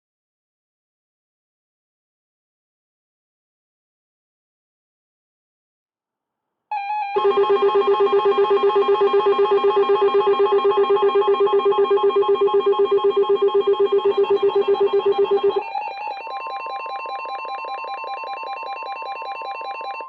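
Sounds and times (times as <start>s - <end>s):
pulsing electronic alarm tone: 6.7s - 20.0s.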